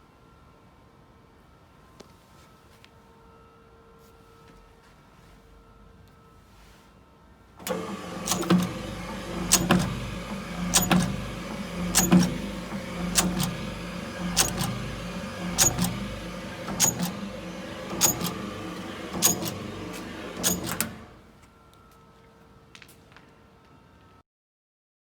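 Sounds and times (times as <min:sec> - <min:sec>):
motor hum: 0:07.6 - 0:21.3.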